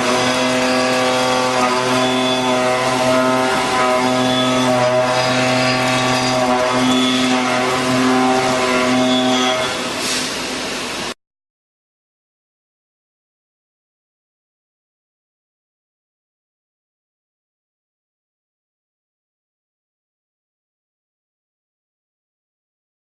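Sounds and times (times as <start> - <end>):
machine hum with overtones: 0.0 - 10.0.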